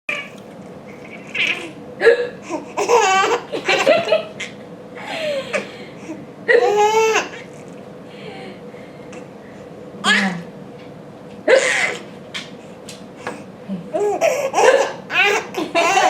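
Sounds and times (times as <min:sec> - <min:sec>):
baby laughing: 0:01.1 - 0:04.6, 0:06.5 - 0:07.5, 0:11.5 - 0:12.1, 0:13.9 - 0:16.0
woman hiccuping: 0:02.0 - 0:02.4, 0:11.5 - 0:12.0.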